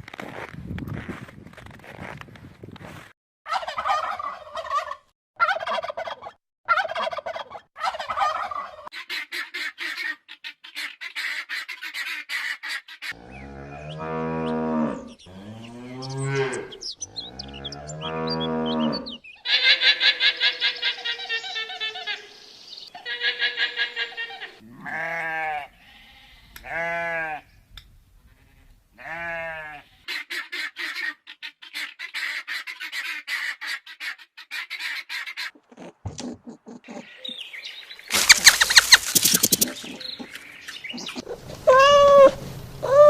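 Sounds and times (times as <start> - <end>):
poultry calls: 3.5 - 27.5, 28.4 - 43.0
quavering bleat: 13.1 - 20.7, 23.0 - 27.5, 28.4 - 30.1
cow mooing: 13.2 - 19.2, 24.6 - 25.7
rapid clucking: 38.1 - 41.6.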